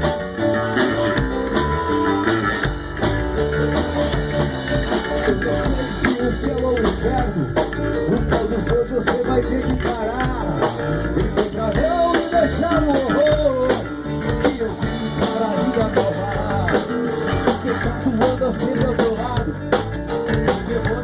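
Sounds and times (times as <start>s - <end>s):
growling electric bass: 0.0s - 21.0s
rock music: 0.0s - 21.0s.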